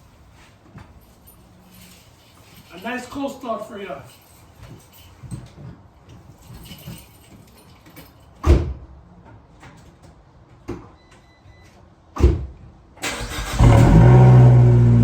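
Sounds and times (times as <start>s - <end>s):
keys jangling: 0.8s - 3.2s, 3.9s - 8.5s.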